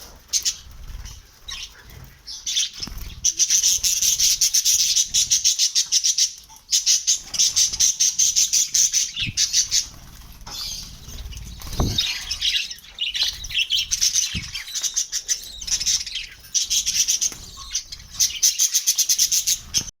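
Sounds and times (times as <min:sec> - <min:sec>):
lovebirds chirping: 0:00.0 - 0:19.9
low thuds: 0:11.5 - 0:12.1.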